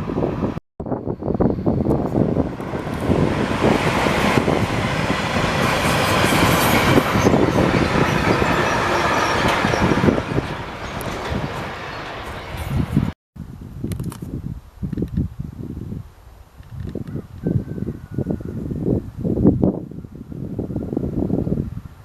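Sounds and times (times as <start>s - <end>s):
train wheels clicking on rails: 1.8s - 13.0s.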